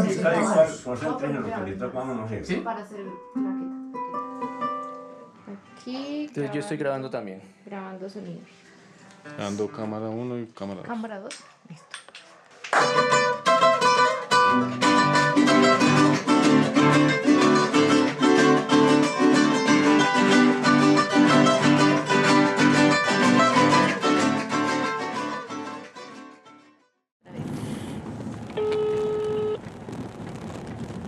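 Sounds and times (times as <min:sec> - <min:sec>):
plucked string melody: 0:03.1 - 0:06.6, 0:12.8 - 0:26.7
low guitar notes: 0:12.8 - 0:26.1.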